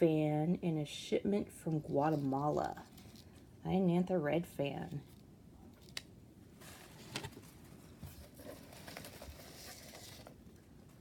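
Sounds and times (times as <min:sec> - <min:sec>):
packaging rustling and crinkling: 0:06.6 - 0:11.0.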